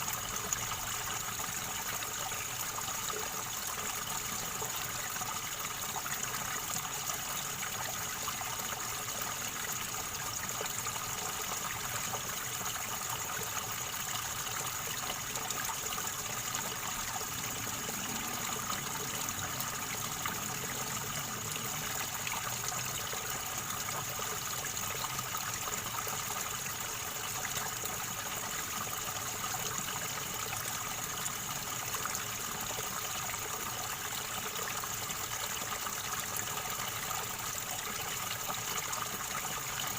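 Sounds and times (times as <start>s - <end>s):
river water flowing over stones: 0.0s - 39.9s.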